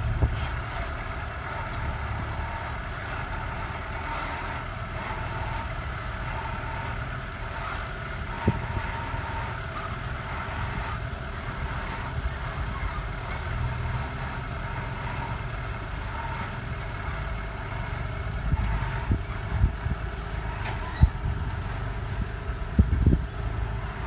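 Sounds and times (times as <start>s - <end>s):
heavy machine engine running: 0.0s - 24.0s.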